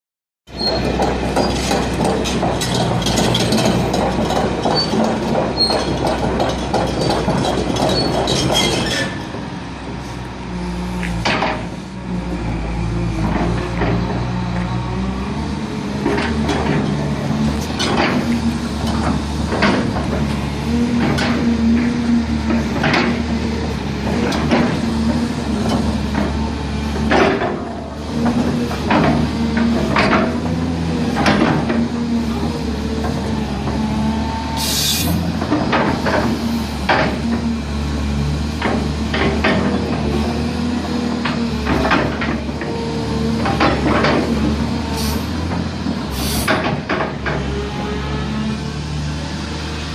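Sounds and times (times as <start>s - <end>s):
excavator diesel engine running: 0.5s - 49.9s
metallic knocks and clanks: 0.6s - 9.2s
short hiss: 34.6s - 35.2s, 46.2s - 46.5s.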